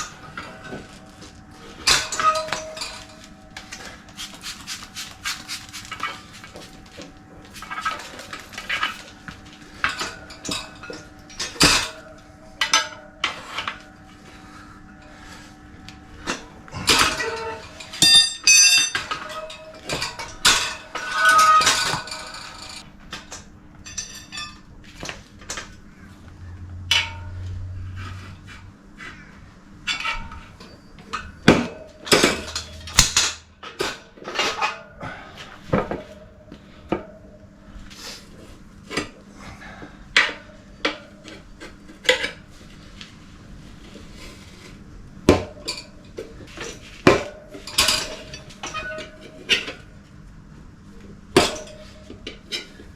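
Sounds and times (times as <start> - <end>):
metal tyre levers clanking on rim: 0.0 - 4.0, 5.9 - 13.8, 16.2 - 26.0, 26.8 - 29.3, 29.9 - 37.4, 51.4 - 52.9.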